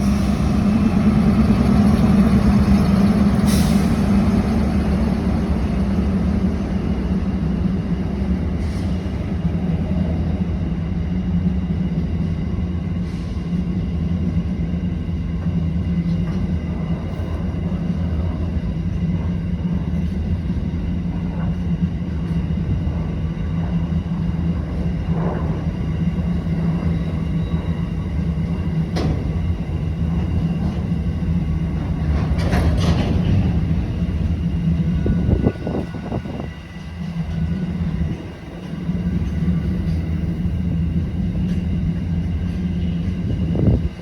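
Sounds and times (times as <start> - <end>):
diesel locomotive engines droning: 0.0 - 44.0
rail noise: 0.0 - 44.0
sharp clicks from wheels and rails: 31.8 - 34.3.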